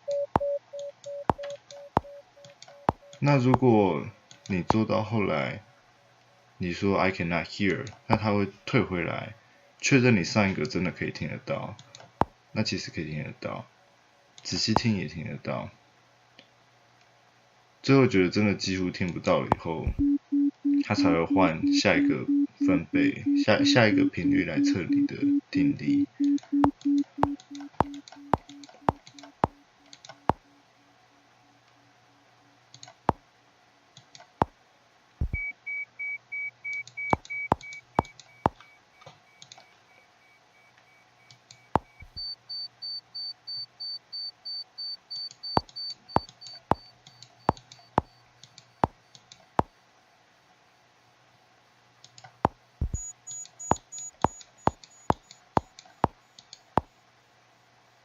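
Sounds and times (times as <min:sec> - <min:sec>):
pulsed test tone beeps: 0:00.1 - 0:03.4, 0:19.9 - 0:30.5, 0:35.2 - 0:38.8, 0:52.8 - 0:55.7
sharp clicks: 0:26.2 - 0:30.2.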